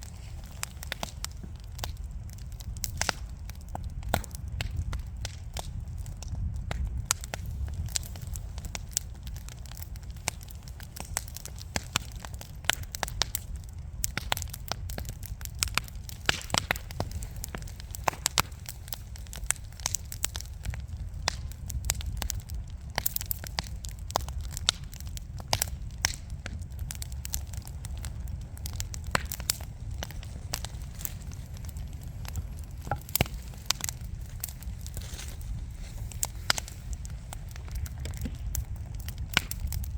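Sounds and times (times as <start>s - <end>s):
fire crackling and popping: 0.0s - 39.9s
low rumble of flames: 0.0s - 39.9s.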